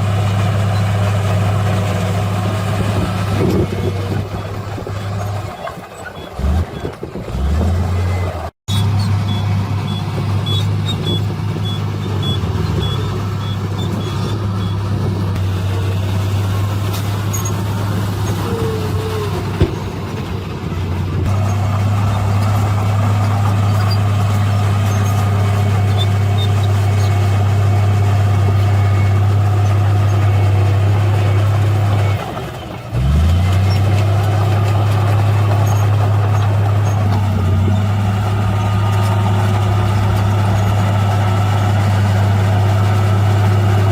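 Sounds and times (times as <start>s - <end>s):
heavy diesel engine running: 0.0s - 43.9s
reversing alarm beeping: 7.8s - 14.8s.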